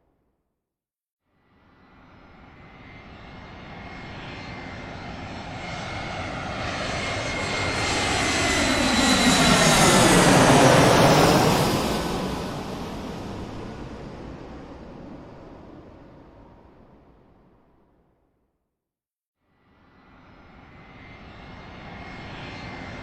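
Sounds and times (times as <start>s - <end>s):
airplane engine noise: 2.0s - 17.3s, 20.2s - 23.0s.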